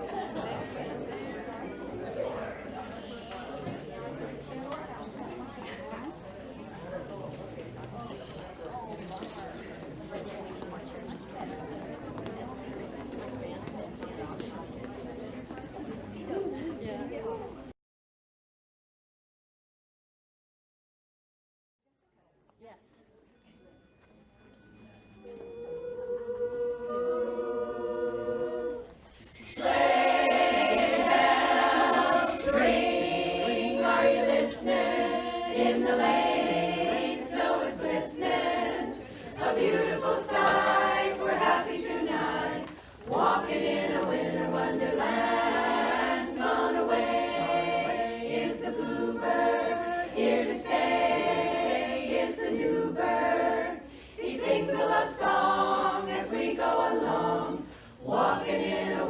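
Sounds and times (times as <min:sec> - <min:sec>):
barbershop chorus singing a cappella: 0:25.3 - 0:59.0.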